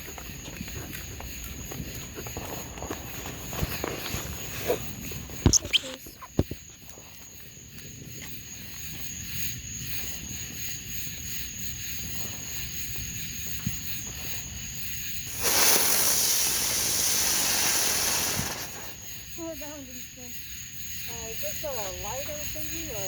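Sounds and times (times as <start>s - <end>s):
firework hissing: 15.0s - 19.6s.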